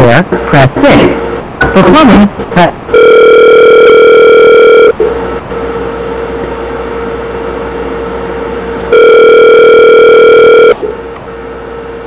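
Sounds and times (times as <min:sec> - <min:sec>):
faint hum: 0:00.0 - 0:12.0
telephone ringback tone: 0:02.9 - 0:05.0, 0:08.9 - 0:10.8.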